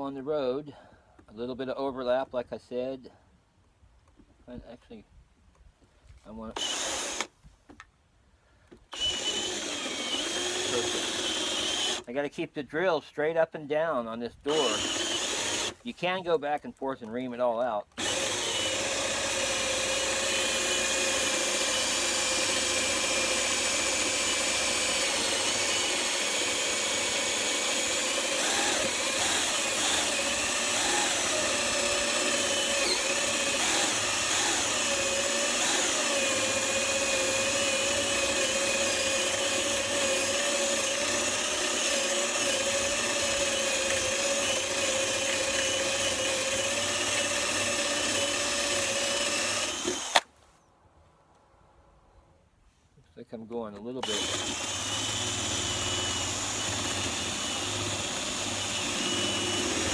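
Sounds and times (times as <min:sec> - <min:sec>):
electric drill boring into wood: 0:06.6 - 0:07.3, 0:08.9 - 0:12.1, 0:14.5 - 0:15.9, 0:17.9 - 0:50.3, 0:54.0 - 0:59.9.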